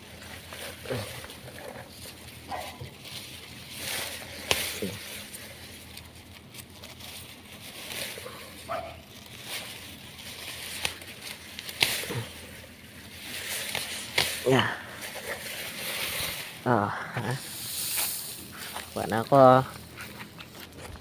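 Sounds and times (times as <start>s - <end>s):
stalks rustling and crackling: 0.0s - 21.0s.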